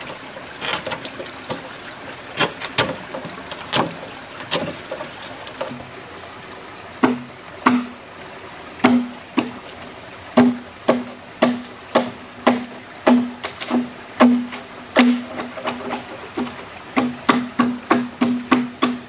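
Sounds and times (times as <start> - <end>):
blade chopping wood: 7.0 - 8.0, 8.8 - 9.6, 10.4 - 16.0, 17.0 - 19.0.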